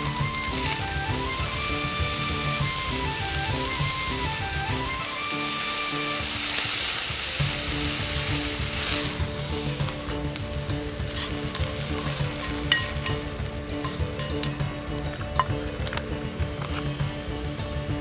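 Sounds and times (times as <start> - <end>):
food sizzling in a pan: 0.0 - 16.9
stirring: 5.0 - 16.9
utensil clicking on pan: 5.1 - 17.0.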